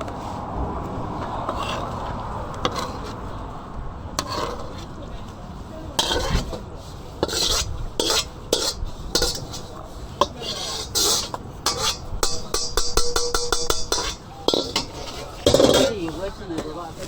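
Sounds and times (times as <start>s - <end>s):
metal utensil scraping a wok: 1.4s - 3.4s, 4.2s - 17.0s
pan ringing: 12.2s - 14.9s.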